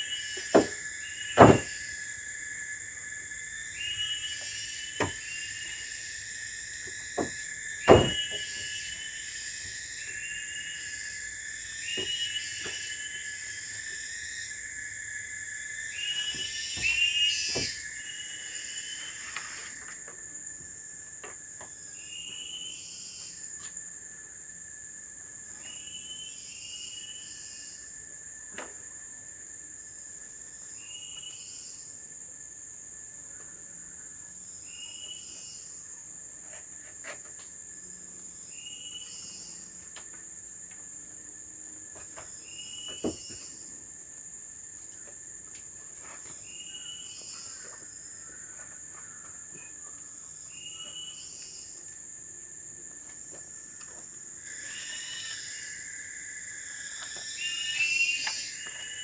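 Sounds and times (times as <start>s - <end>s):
insects droning: 0.0s - 59.0s
sharp knocks: 0.5s - 0.8s, 1.4s - 1.7s, 7.2s - 8.4s.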